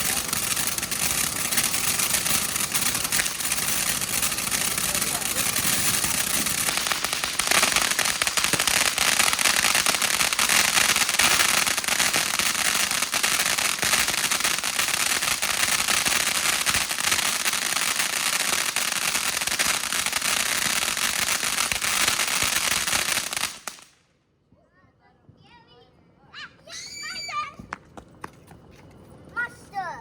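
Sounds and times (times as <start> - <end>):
firework crackling: 0.0 - 24.0.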